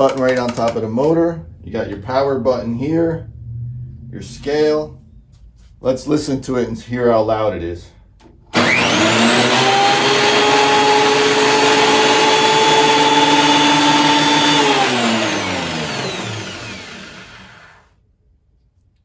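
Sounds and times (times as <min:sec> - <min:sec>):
planer winding down: 0:08.5 - 0:17.9
thickness planer whining: 0:08.5 - 0:17.9.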